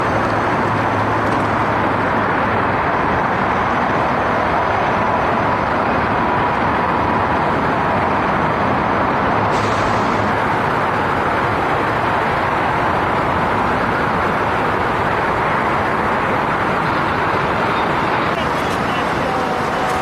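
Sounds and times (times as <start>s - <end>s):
road traffic noise: 0.0s - 20.0s
vehicle engine: 0.0s - 20.0s.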